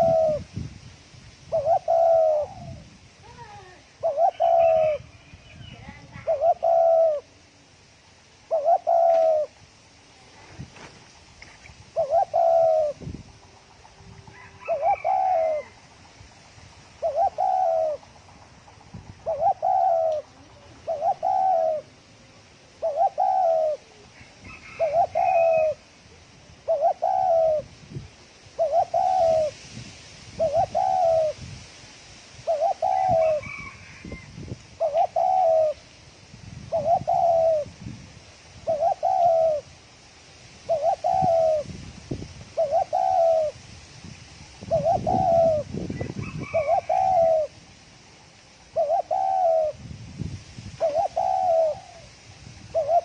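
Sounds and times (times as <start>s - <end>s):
dove cooing: 0.0s - 0.5s, 1.5s - 7.4s, 8.5s - 9.6s, 11.9s - 15.8s, 17.0s - 27.7s, 28.5s - 29.6s, 30.4s - 31.4s, 32.4s - 35.8s, 36.6s - 37.8s, 38.6s - 39.8s, 40.6s - 41.8s, 42.5s - 43.6s, 44.6s - 47.6s, 48.7s - 49.9s, 50.8s - 53.0s.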